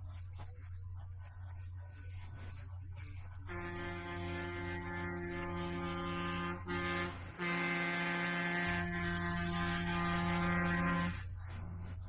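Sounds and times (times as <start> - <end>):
train air horn: 3.5 - 11.3.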